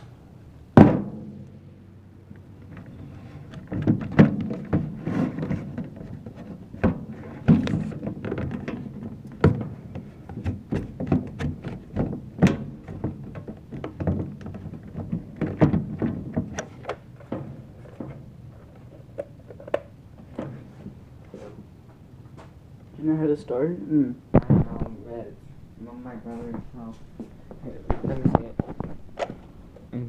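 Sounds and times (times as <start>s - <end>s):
small hard objects knocking: 3.5s - 20.5s.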